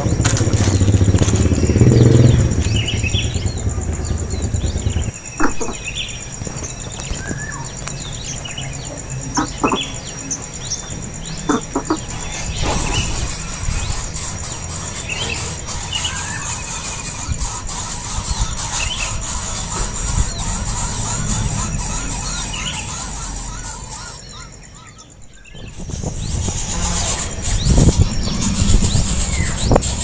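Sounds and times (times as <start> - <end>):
low rumble: 0.0 - 6.9, 18.1 - 24.0, 25.2 - 30.0
small birds chirping: 0.0 - 30.0.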